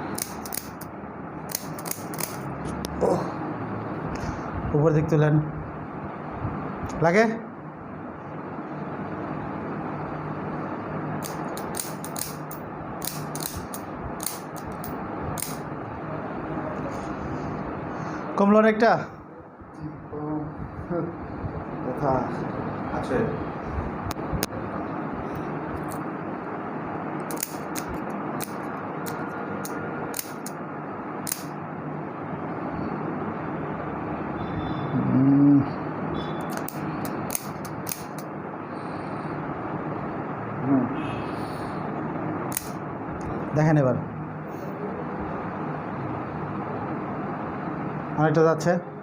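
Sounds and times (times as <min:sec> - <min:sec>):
steady background noise: 0:00.0 - 0:49.0
steady low hum: 0:00.0 - 0:49.0
sharp clicks and rustles: 0:00.1 - 0:00.9, 0:01.5 - 0:02.9, 0:11.2 - 0:15.6, 0:27.2 - 0:30.6.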